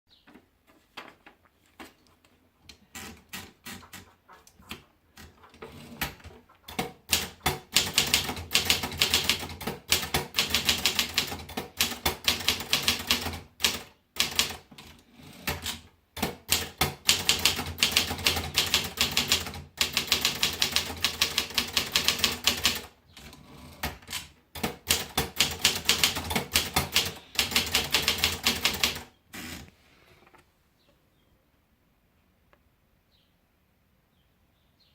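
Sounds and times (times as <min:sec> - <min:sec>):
typewriter keystrokes: 0:06.0 - 0:29.1.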